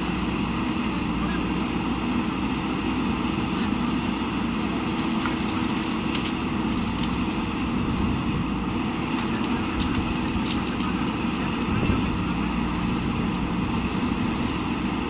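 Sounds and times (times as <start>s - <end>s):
diesel engine running: 0.0s - 15.0s.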